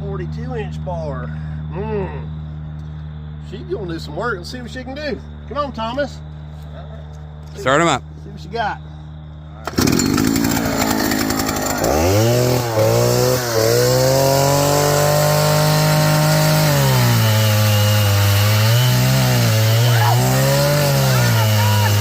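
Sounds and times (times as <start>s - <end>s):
chainsaw revving: 9.6s - 22.0s
chainsaw cutting wood: 9.7s - 22.0s.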